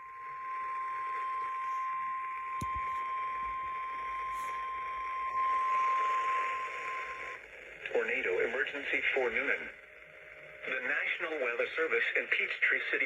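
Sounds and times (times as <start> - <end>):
steady high alarm tone: 0.0 - 7.5
radio hiss: 4.0 - 13.0.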